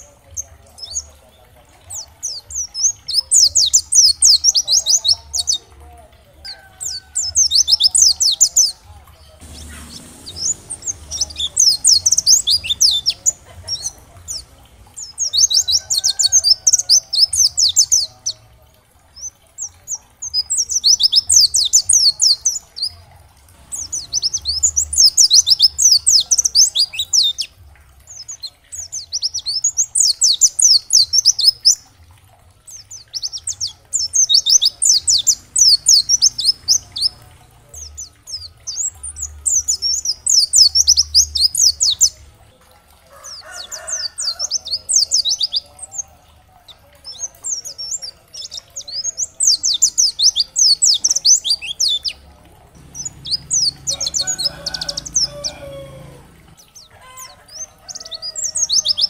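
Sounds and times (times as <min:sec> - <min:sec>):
bird twittering: 0:09.4 - 0:18.3.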